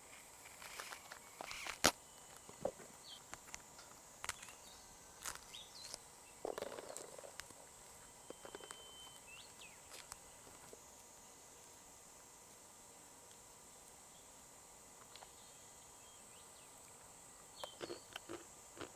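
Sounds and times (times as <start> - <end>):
faint high-pitched drone: 0.0 - 12.2
bird chirps: 5.5 - 6.7, 8.2 - 10.0, 17.6 - 18.2.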